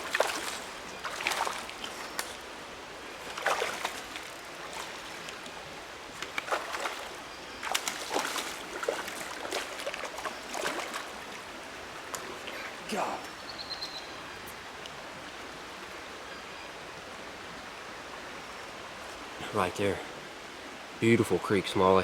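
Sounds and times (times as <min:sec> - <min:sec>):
water splashing at surface: 0:00.0 - 0:02.4, 0:03.3 - 0:05.2, 0:06.2 - 0:11.3
creek rushing over shoals: 0:00.0 - 0:22.0.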